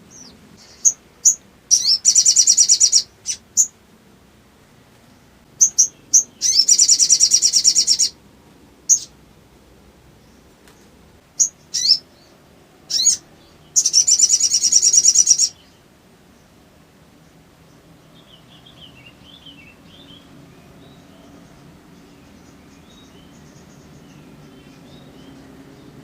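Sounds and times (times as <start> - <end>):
faint bird twittering: 0.0 - 3.8, 5.0 - 8.2, 8.9 - 9.2, 10.2 - 16.6, 17.2 - 26.0
bird chirping and trilling: 0.1 - 3.8, 5.6 - 8.2, 8.9 - 9.2, 11.4 - 15.8, 18.1 - 26.0.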